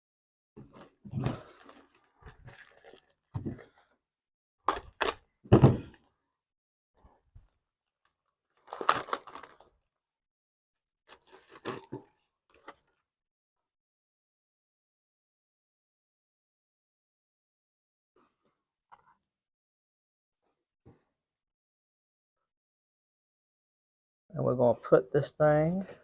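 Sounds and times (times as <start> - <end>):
handling rustles and scrapes: 0.6 - 3.9.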